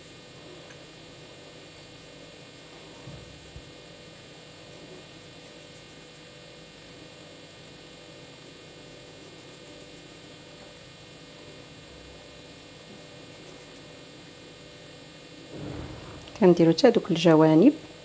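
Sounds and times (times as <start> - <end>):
low bump: 15.5 - 17.5.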